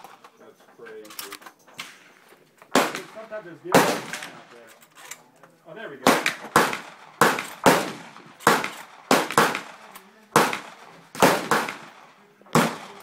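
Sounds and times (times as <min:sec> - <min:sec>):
shotgun shots with echo: 0:02.7 - 0:04.5, 0:06.0 - 0:13.0.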